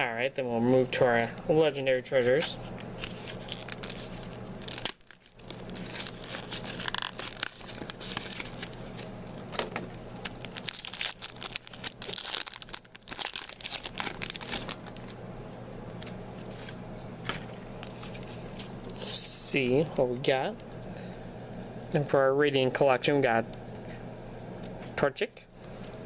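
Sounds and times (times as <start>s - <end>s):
foil wrapper crinkling and tearing: 2.7s - 9.4s, 10.1s - 15.2s.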